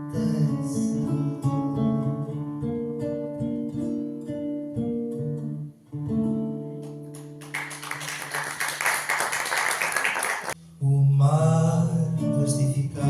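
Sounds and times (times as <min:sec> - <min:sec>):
solo guitar plucking: 0:00.0 - 0:07.4
audience applause: 0:07.1 - 0:10.6.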